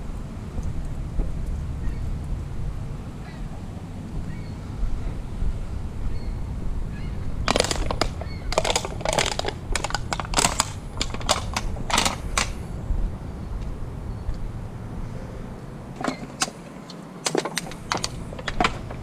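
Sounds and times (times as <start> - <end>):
wind rumble on microphone: 0.0 - 16.9
scrap items clattering and rattling: 7.5 - 12.6, 16.0 - 19.0.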